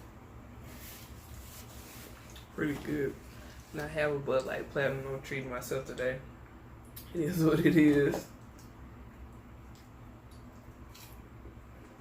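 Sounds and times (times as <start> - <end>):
faint low hum: 0.0 - 12.0.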